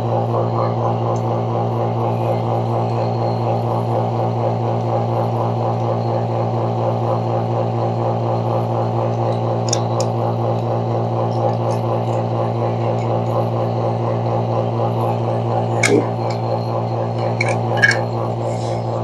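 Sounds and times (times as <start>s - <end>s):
electric motor humming: 8.6s - 19.0s.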